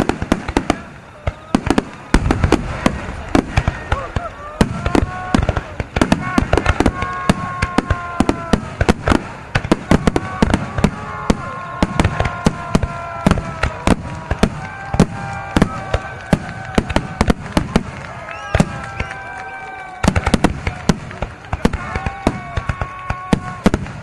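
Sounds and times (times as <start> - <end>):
firework shells bursting: 0.0 - 24.0
steady high tones: 10.6 - 24.0.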